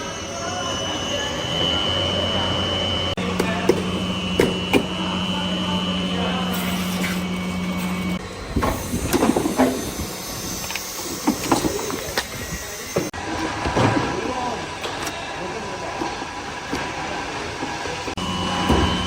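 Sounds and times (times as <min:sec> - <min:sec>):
workshop machine humming: 0:00.0 - 0:19.0.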